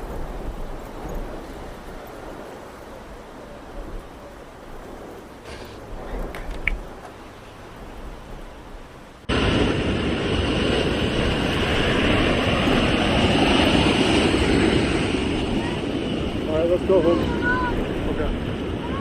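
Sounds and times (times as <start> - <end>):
rushing wind and rain: 0.0 - 19.0
small clicks: 5.6 - 7.2.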